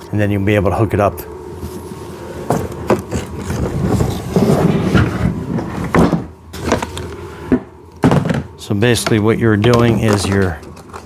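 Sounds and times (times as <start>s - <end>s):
hard plastic scraping and rubbing: 1.6s - 11.0s.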